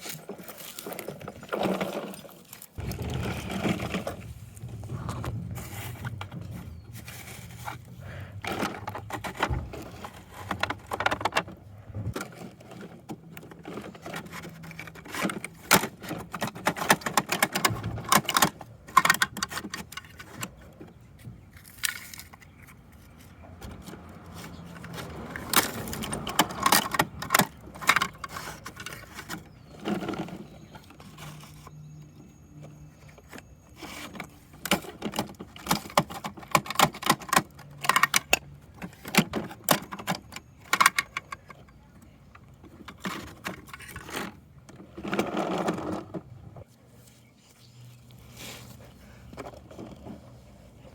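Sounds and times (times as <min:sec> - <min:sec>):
plastic toy parts clattering: 0:00.0 - 0:31.7, 0:33.0 - 0:46.3
low hum: 0:02.8 - 0:12.2.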